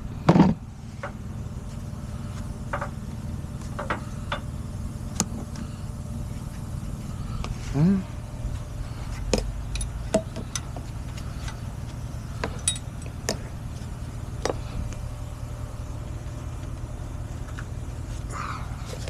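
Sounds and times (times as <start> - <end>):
truck engine idling: 0.0 - 19.0
metal tow gear clinking: 9.7 - 10.8, 12.5 - 13.2.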